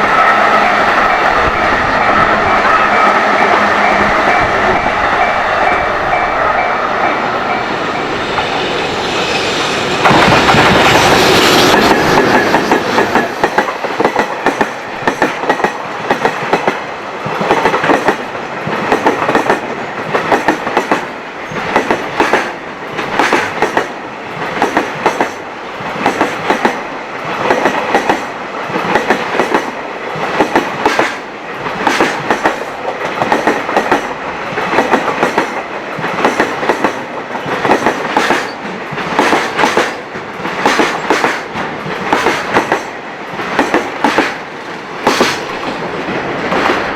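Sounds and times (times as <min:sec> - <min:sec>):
train wheels clacking over rail joints: 0:00.6 - 0:46.9.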